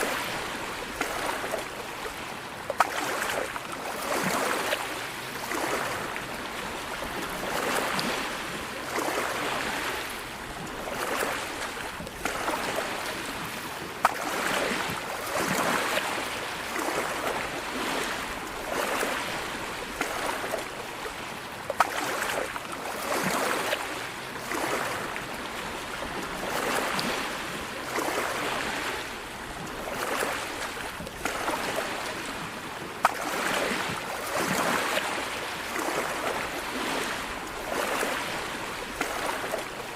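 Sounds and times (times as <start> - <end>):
sea waves washing on shore: 0.0 - 39.9.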